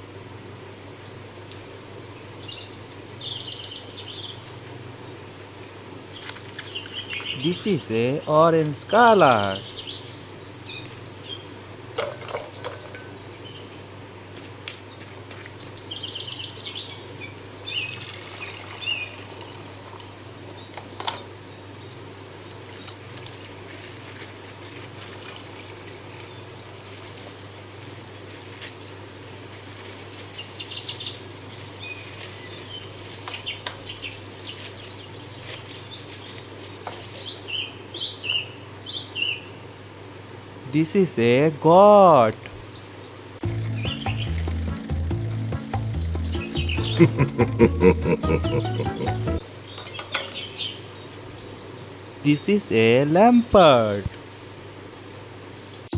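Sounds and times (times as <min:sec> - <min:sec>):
birds chirping: 0:00.0 - 0:55.9.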